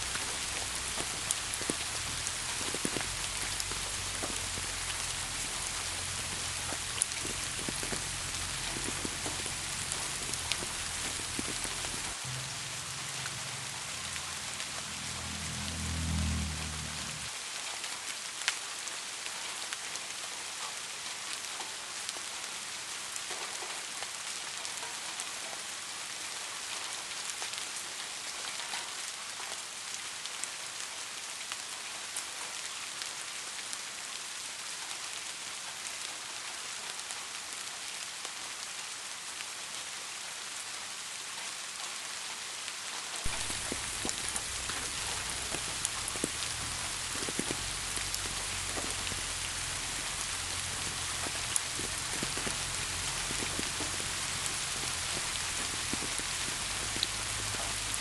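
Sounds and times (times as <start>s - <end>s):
deep rumble: 0.0s - 17.3s, 43.3s - 58.0s
steady rain falling: 0.0s - 58.0s.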